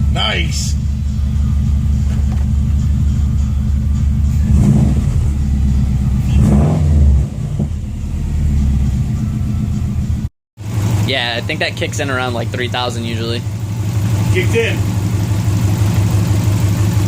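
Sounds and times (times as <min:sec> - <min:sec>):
car engine idling and revving: 0:00.0 - 0:17.0.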